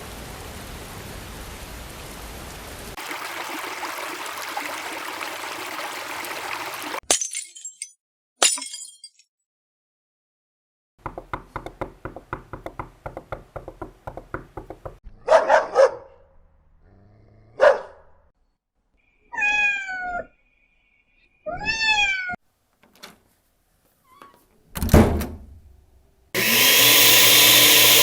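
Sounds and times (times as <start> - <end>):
cat meowing: 19.3 - 20.3, 21.5 - 22.4.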